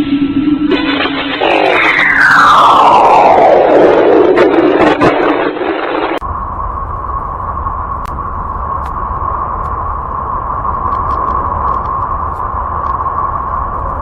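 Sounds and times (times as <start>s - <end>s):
deep rumble: 0.0s - 14.0s
steady droning hiss: 5.8s - 14.0s.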